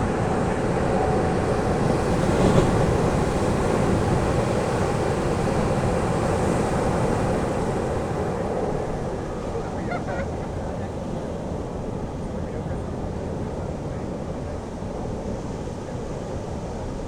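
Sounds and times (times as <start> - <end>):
ocean surf on sandy beach: 0.0 - 12.2.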